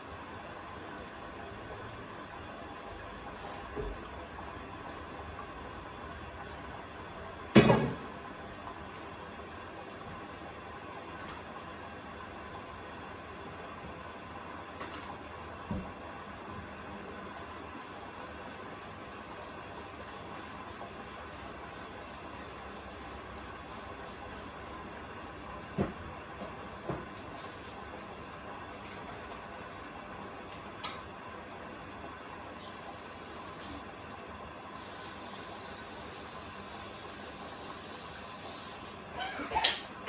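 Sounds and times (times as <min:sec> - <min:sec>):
washing machine rhythmic hiss: 0:00.0 - 0:40.0
washing machine running: 0:00.0 - 0:40.0
water hissing through inlet: 0:34.7 - 0:39.1.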